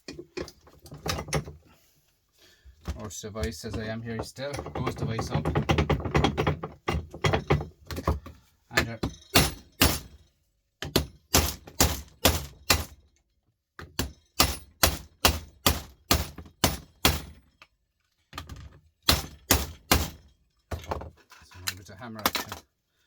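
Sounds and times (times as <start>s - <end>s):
hammer striking device casing: 8.8s - 10.2s, 10.8s - 13.0s.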